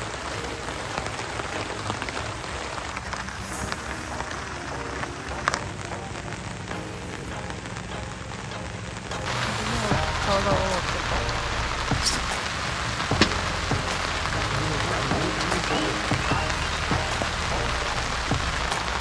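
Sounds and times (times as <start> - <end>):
raindrops ticking: 0.0 - 19.0
steady rain falling: 0.0 - 19.0.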